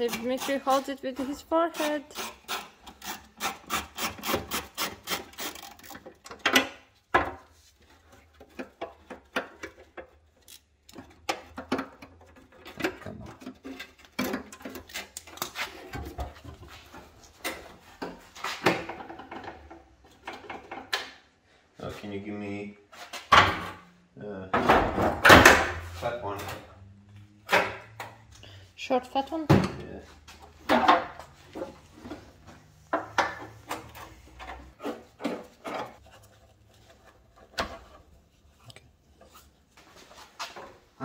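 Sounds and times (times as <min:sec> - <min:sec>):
hand tools clacking and knocking: 0:00.0 - 0:21.2, 0:29.5 - 0:38.0
scraping and rattling of car parts: 0:00.0 - 0:21.5, 0:24.5 - 0:28.4, 0:29.2 - 0:41.0.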